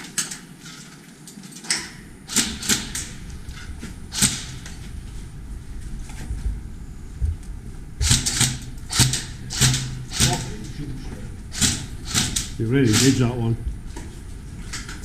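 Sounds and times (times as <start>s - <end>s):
low rumble of movement: 1.8s - 15.0s
airsoft gun shots: 2.3s - 3.2s, 4.1s - 4.8s, 8.0s - 10.6s, 11.5s - 13.4s.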